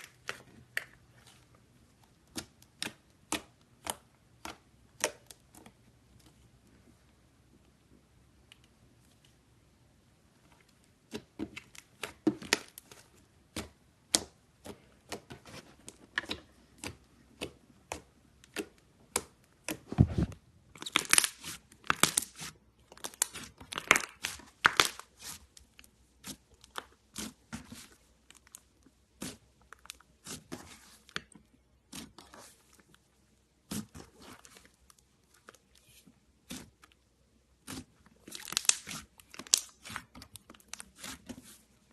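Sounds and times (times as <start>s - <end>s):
slime crackling and popping: 20.8s - 31.3s, 37.6s - 41.3s.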